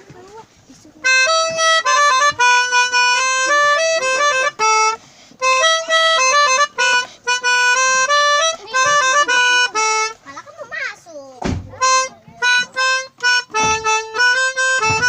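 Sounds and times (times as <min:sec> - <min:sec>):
melodica playing a melody: 0:00.9 - 0:10.7, 0:11.7 - 0:15.0.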